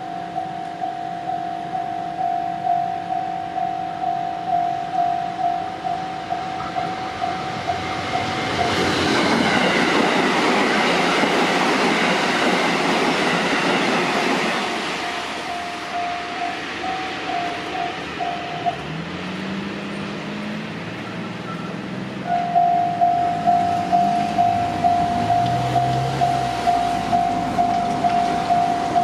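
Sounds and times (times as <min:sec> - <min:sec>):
level-crossing bell dinging: 0:00.0 - 0:09.0, 0:15.0 - 0:19.0, 0:21.0 - 0:29.0
train passing: 0:00.0 - 0:29.0.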